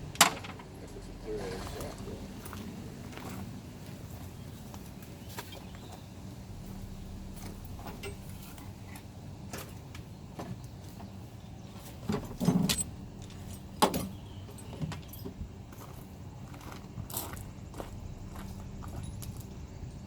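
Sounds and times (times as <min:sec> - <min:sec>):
low steady hum: 0:00.0 - 0:20.0
metal clattering: 0:06.4 - 0:09.9, 0:12.0 - 0:15.5
metallic clinks and knocks: 0:06.6 - 0:09.6, 0:12.1 - 0:15.9, 0:17.8 - 0:19.7.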